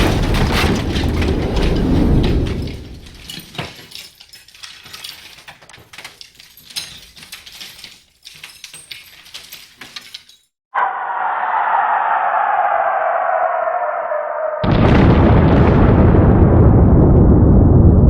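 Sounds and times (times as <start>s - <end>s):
debris and glass clinking: 0.0s - 10.5s
explosion rumble: 14.0s - 18.0s.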